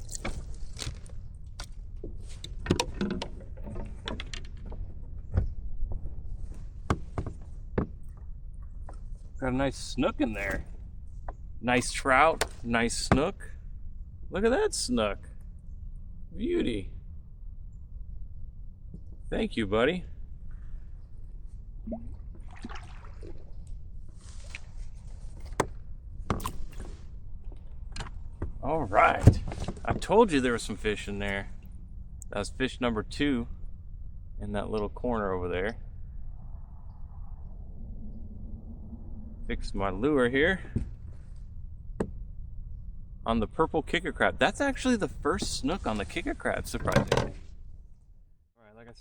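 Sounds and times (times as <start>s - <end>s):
steady low rumble: 3.4s - 22.6s, 23.3s - 46.8s
water splashing and dripping: 21.9s - 23.7s
wind rumble on microphone: 31.2s - 47.9s.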